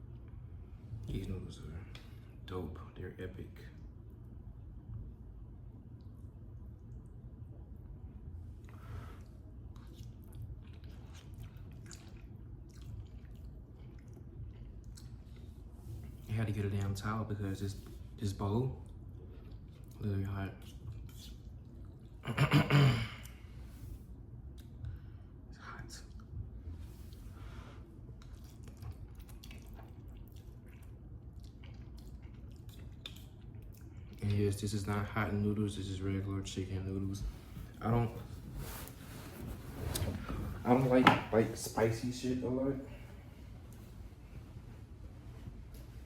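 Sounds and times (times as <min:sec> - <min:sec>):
low steady hum: 0:00.0 - 0:46.0
person chewing wetly: 0:09.2 - 0:15.6, 0:18.8 - 0:20.0, 0:28.0 - 0:34.3.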